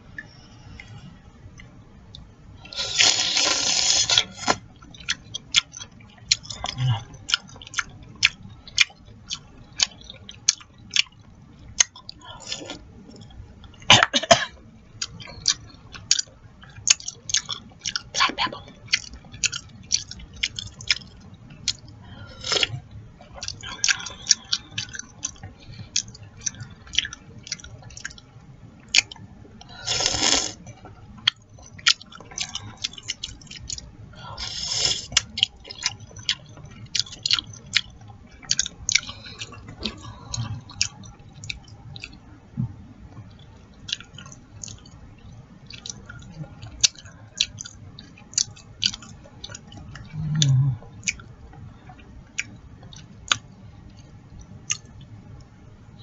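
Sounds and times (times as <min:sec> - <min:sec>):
wet chewing and lip smacking: 0:01.6 - 0:13.9, 0:15.0 - 0:55.5
slurping soup: 0:02.7 - 0:04.6, 0:29.8 - 0:30.6.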